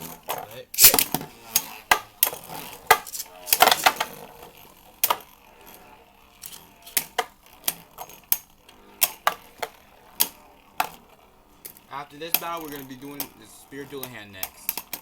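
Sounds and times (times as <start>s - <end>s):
spinning tops clashing: 0.8s - 2.1s, 2.8s - 4.2s.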